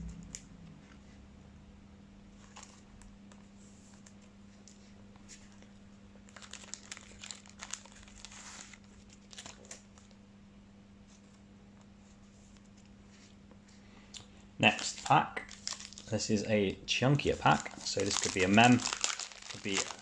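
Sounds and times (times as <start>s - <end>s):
wrapper crinkling and tearing: 6.3s - 10.1s, 14.6s - 16.2s, 17.2s - 20.0s.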